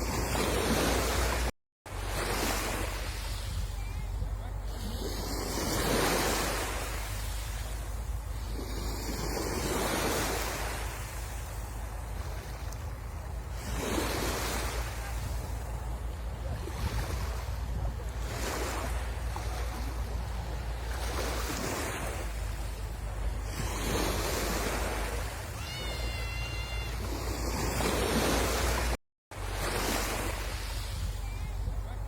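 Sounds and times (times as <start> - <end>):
sea waves washing: 0.0 - 32.0
wind on microphone: 2.3 - 28.9, 29.5 - 32.0
short high tone: 25.5 - 27.2.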